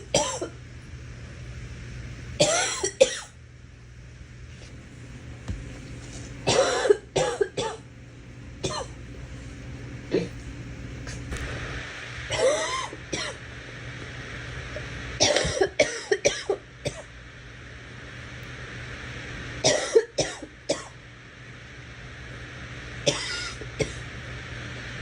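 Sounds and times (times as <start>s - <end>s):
girl coughing: 0.1s - 0.5s, 2.4s - 3.3s, 6.5s - 7.8s, 8.6s - 8.9s, 12.3s - 13.4s, 15.2s - 17.0s, 19.6s - 20.9s, 23.1s - 24.0s.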